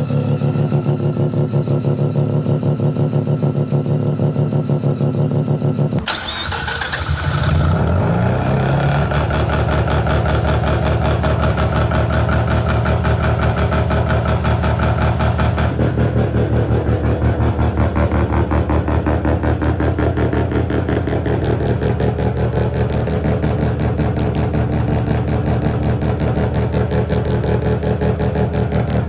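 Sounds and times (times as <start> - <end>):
rotary engine idling: 6.0 - 29.0.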